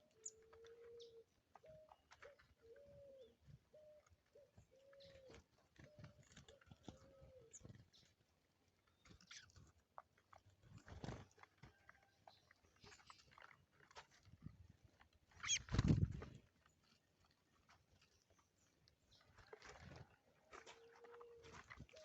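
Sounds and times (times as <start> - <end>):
dove cooing: 0.0 - 7.7.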